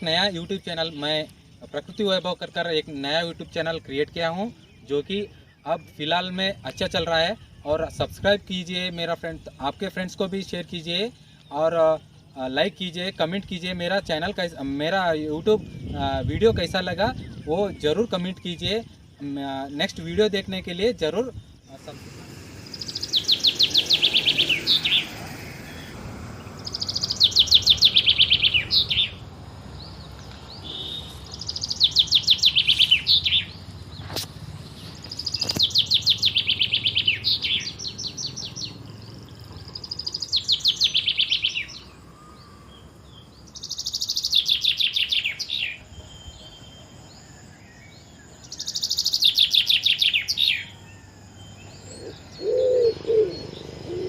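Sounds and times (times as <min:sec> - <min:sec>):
songbird singing high trill: 0:00.0 - 0:54.0.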